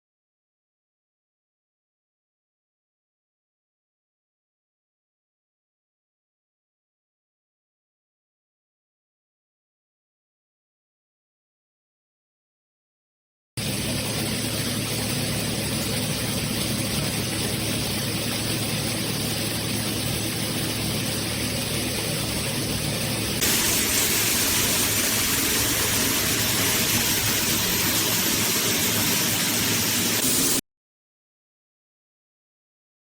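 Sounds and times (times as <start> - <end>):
shower water running: 23.4 - 30.6.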